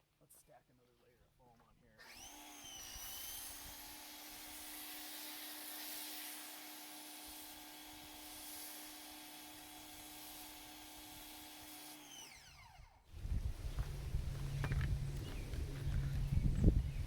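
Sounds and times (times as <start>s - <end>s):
pressure washer running: 3.4s - 17.0s
low rumble: 13.2s - 17.0s.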